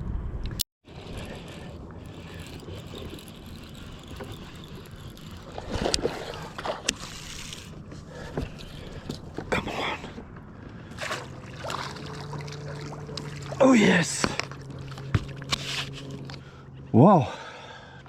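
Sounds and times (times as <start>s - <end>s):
water sloshing against boat: 0.9s - 17.9s
short sharp splashes: 10.9s - 14.6s.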